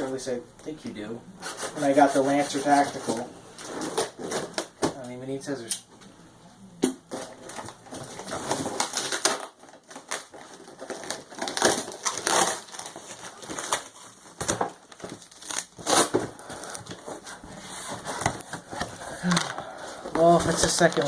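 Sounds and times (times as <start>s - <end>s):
cardboard box being torn: 8.0s - 17.2s.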